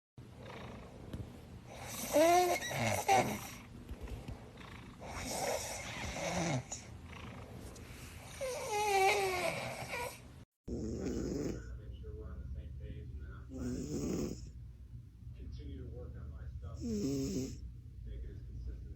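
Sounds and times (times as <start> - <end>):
cat snoring: 0.2 - 11.8, 13.5 - 14.6, 16.8 - 17.6.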